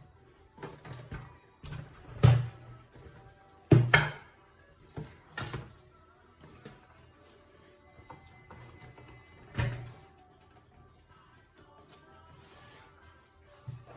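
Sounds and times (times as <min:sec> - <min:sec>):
faint background music: 0:00.0 - 0:13.9.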